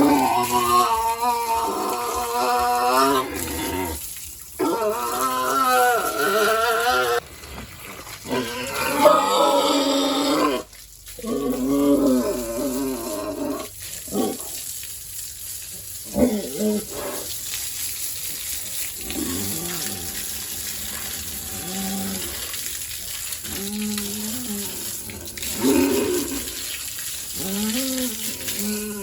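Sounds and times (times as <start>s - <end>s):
pigs grunting: 0.0s - 4.0s, 7.8s - 14.6s, 19.0s - 29.0s
water running from a hose: 0.0s - 29.0s.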